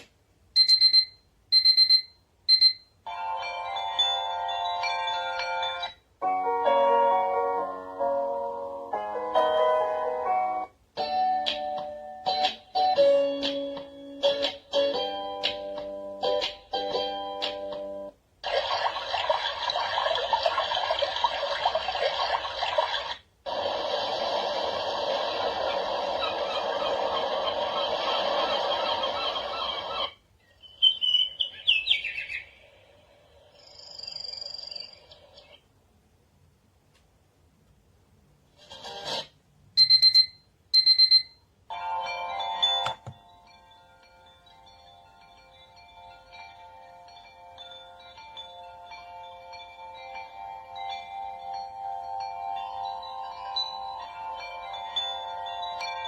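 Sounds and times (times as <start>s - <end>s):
radio static hiss and crackle: 18.4s - 30.2s
alarm chiming melody: 39.8s - 56.0s.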